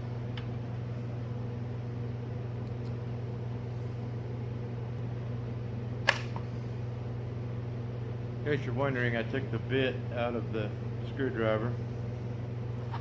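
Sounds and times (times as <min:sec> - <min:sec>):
low mechanical hum: 0:00.0 - 0:13.0
sharp plastic click: 0:06.1 - 0:06.4.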